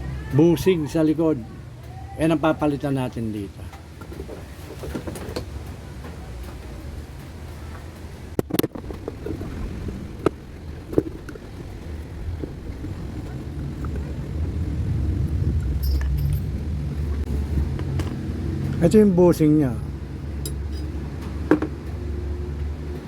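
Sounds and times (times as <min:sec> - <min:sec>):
fan motor parts clicking and knocking: 0:00.9 - 0:19.6, 0:20.2 - 0:22.2
steady low rumble: 0:05.5 - 0:23.0.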